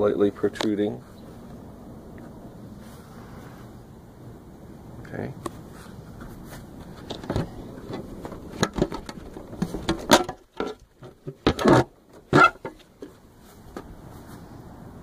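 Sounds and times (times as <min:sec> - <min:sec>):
glass and parts clicking and knocking: 0:07.0 - 0:13.1.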